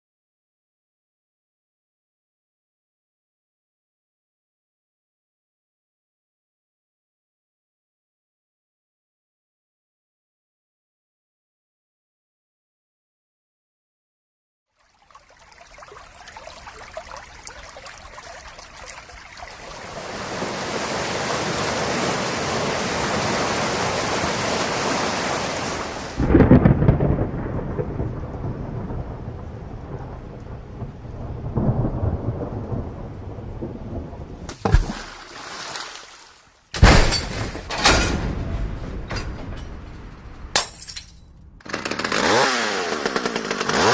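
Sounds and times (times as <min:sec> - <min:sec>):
heavy rain hiss: 0:16.6 - 0:26.2
loud thunder crashes: 0:26.2 - 0:34.5, 0:36.8 - 0:40.6
sharp thunder crack: 0:26.2 - 0:34.5
thunderclap with rumbling: 0:26.2 - 0:34.5, 0:37.9 - 0:40.6.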